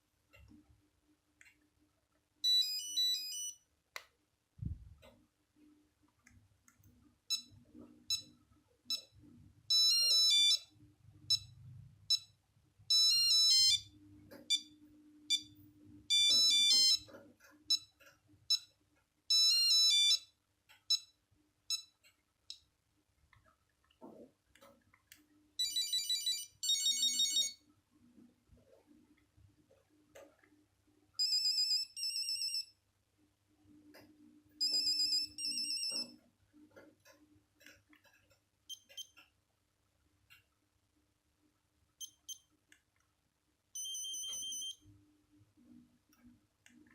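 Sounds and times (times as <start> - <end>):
phone ringtone beeping notes: 2.4 - 3.6, 9.7 - 10.7, 12.9 - 13.9, 15.3 - 15.5, 16.1 - 17.1, 19.3 - 20.3, 25.6 - 27.6, 31.2 - 32.7, 34.6 - 36.1, 43.8 - 44.8
repeated phone tone: 2.4 - 3.6, 9.7 - 10.7, 16.1 - 17.1, 25.6 - 27.6, 34.6 - 36.2, 43.8 - 44.8.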